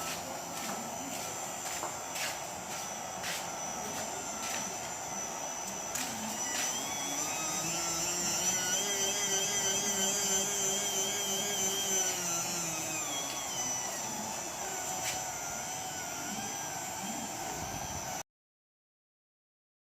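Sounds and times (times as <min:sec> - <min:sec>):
high whine: 0:00.0 - 0:18.2
small electric motor running: 0:00.0 - 0:18.2.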